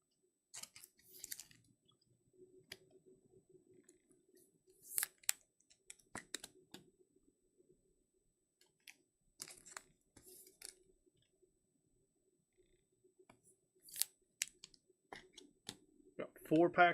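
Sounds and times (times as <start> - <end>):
cards and packaging clicking: 0.5 - 1.6, 4.8 - 6.8, 8.6 - 10.8, 13.9 - 15.8.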